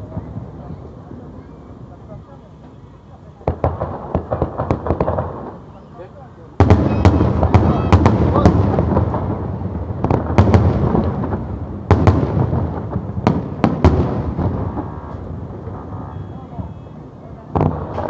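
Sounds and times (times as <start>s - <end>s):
fireworks bangs: 0.0s - 18.0s
fireworks crackle and rumble: 0.0s - 18.0s.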